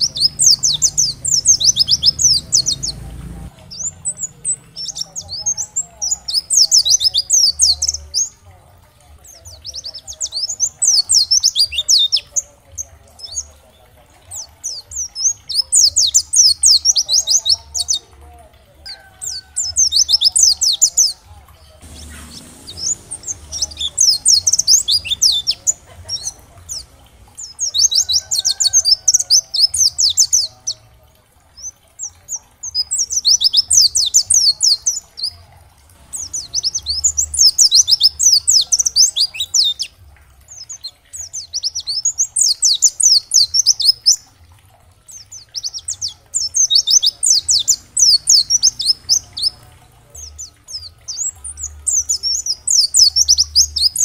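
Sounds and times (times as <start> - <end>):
bird twittering: 0.0 - 8.4, 21.8 - 30.8, 36.1 - 44.2, 45.2 - 49.7.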